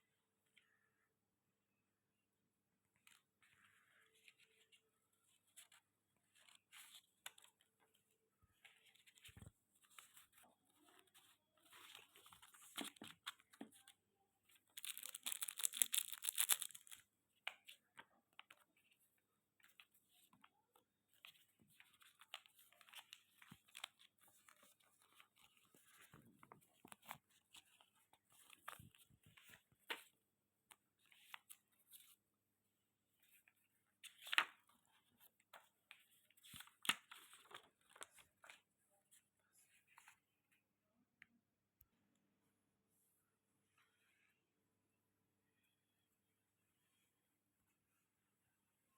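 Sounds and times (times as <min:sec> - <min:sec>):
paper and packaging rustling: 0:05.5 - 0:17.7
packaging tearing: 0:14.8 - 0:17.0.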